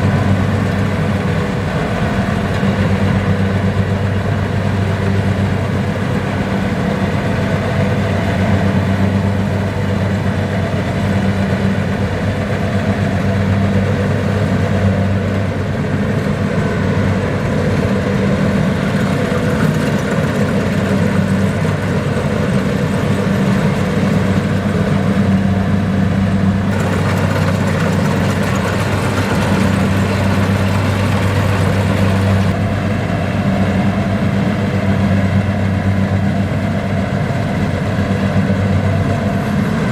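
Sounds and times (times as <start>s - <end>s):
diesel engine running: 0.0s - 39.9s
machinery clattering: 18.6s - 24.6s, 26.5s - 32.6s.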